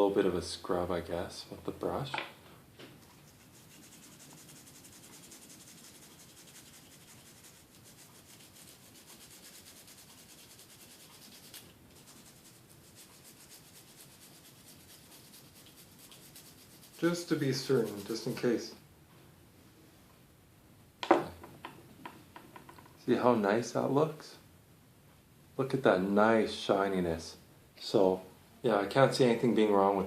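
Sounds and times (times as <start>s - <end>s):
small brush scrubbing: 3.0s - 18.8s.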